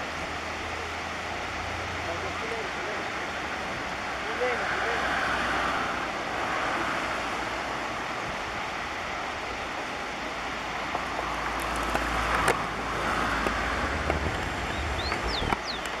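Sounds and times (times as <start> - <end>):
flowing water rushing: 0.0 - 16.0
wind rumbling on microphone: 3.6 - 16.0.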